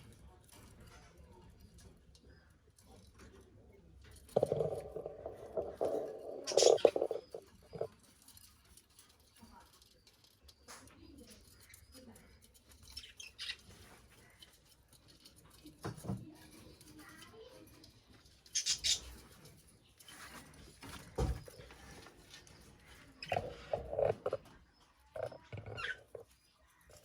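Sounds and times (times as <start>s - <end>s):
budgies chirping: 4.7s - 7.9s, 18.5s - 19.4s.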